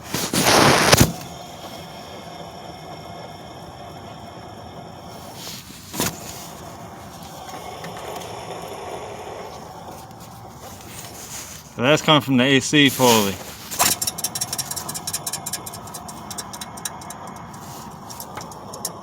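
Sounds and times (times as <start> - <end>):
car engine running: 3.4 - 19.0
grinding rattle from pulley: 13.6 - 19.0.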